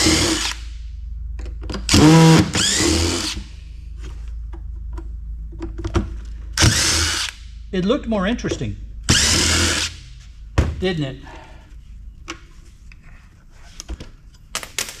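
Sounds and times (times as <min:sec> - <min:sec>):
cordless drill whirring: 0:00.0 - 0:00.6, 0:01.9 - 0:03.4, 0:06.6 - 0:07.4, 0:09.1 - 0:10.0.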